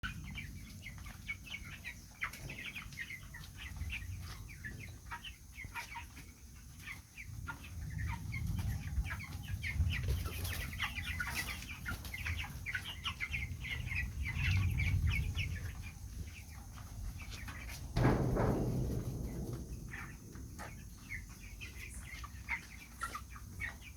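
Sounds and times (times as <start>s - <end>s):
chickens clucking: 0.0s - 23.9s
low rumble: 18.0s - 22.4s.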